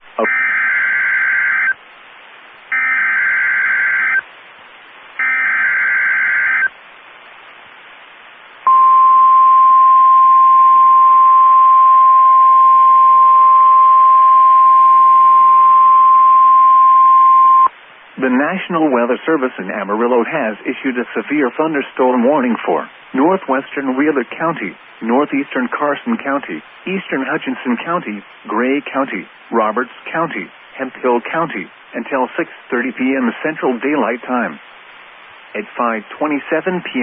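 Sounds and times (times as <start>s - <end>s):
radio hiss: 0.0s - 8.7s, 11.1s - 37.0s
single-pitch warning alarm tone: 0.2s - 1.8s, 2.7s - 4.2s, 5.2s - 6.7s, 8.7s - 17.7s.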